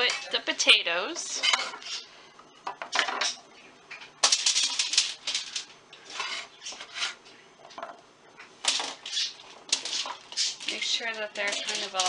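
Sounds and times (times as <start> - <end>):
potatoes clattering on baking sheet: 4.2 - 7.2, 8.7 - 12.0.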